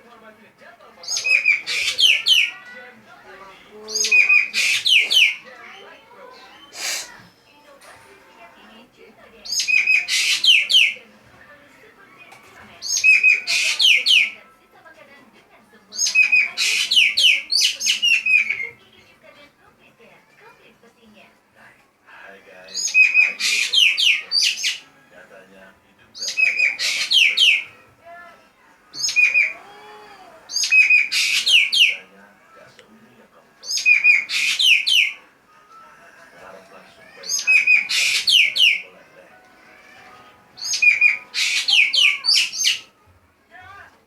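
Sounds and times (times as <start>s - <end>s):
magpie calling: 1.0s - 2.8s, 3.8s - 5.5s, 6.3s - 7.2s, 9.4s - 11.1s, 12.8s - 14.4s, 15.9s - 18.8s, 22.7s - 24.9s, 26.2s - 27.8s, 28.9s - 32.1s, 33.6s - 35.3s, 37.0s - 39.0s, 40.6s - 42.9s.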